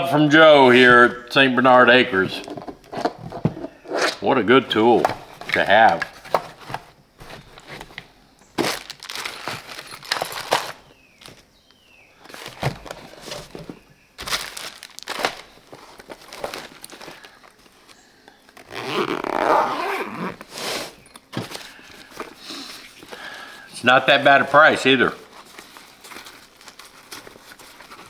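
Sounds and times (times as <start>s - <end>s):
rustling: 0.3s - 28.0s
clunks and knocks: 2.4s - 3.8s.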